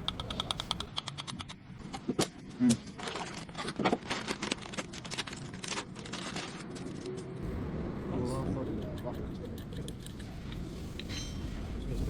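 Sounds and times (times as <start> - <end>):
irregular clicks and knocks: 0.0 - 2.3.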